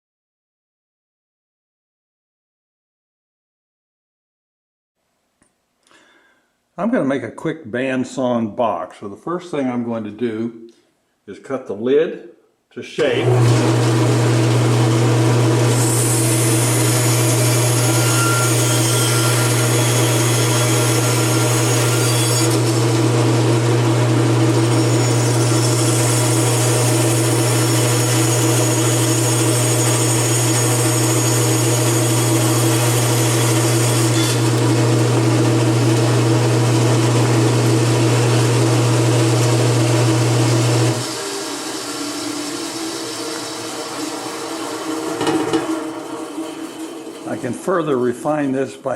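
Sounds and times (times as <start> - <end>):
bandsaw motor hum: 13.0 - 47.6
saw blade cutting wood: 15.6 - 47.8.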